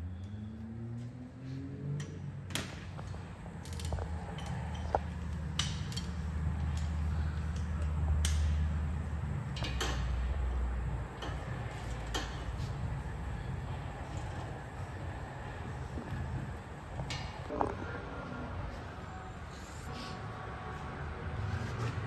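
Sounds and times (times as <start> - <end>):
low steady rumble: 2.2 - 22.0.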